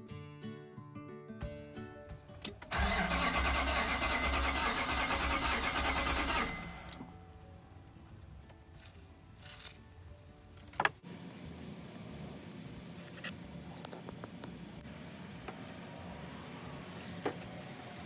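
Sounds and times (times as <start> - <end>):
starter motor cranking engine: 2.7 - 7.0.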